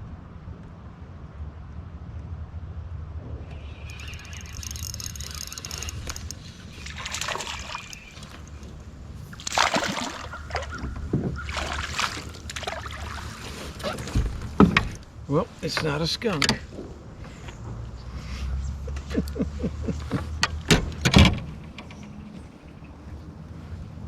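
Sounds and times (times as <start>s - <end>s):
water splashing against kayak: 3.9s - 15.0s.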